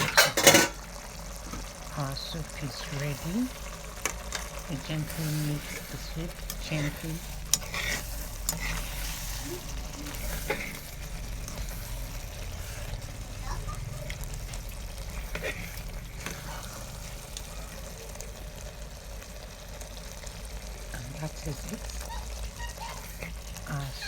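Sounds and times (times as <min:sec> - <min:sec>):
spoon stirring thick soup: 0:02.8 - 0:18.4.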